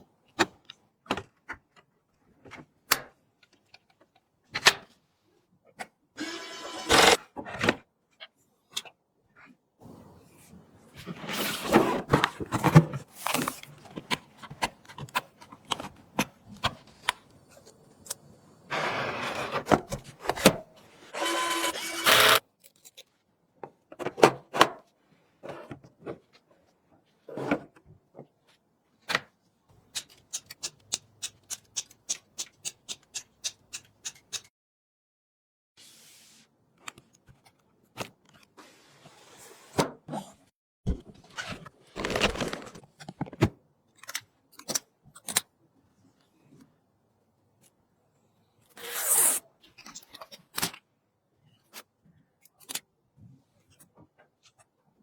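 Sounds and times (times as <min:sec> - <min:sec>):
whirring: 0:21.1 - 0:22.4.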